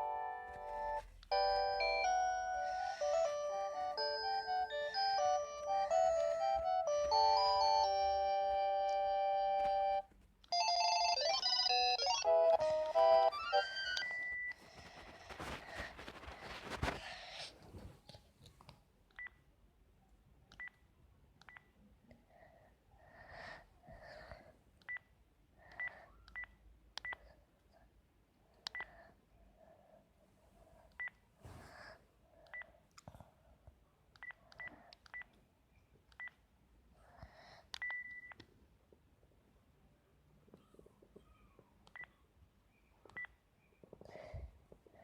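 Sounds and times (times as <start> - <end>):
soft rustles: 14.1 - 18.8.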